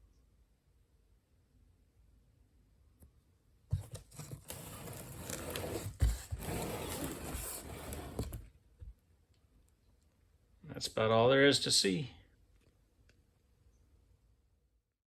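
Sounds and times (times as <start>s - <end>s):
rustling and scraping: 3.7s - 8.5s.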